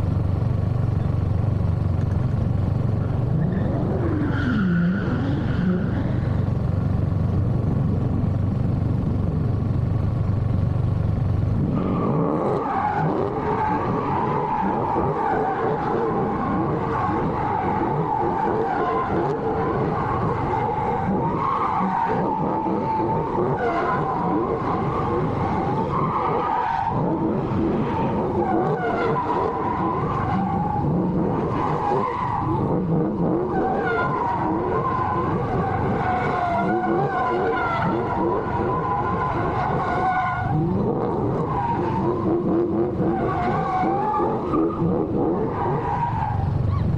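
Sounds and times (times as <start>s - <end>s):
car tyres screeching: 0.0s - 46.9s.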